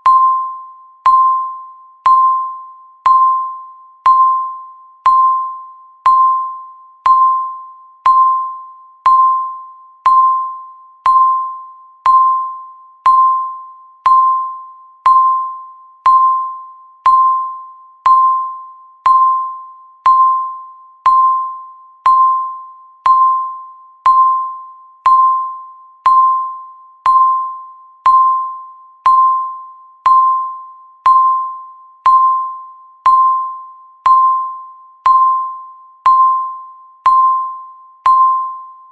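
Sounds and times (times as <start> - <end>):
countdown timer beep: 0.0 - 38.9.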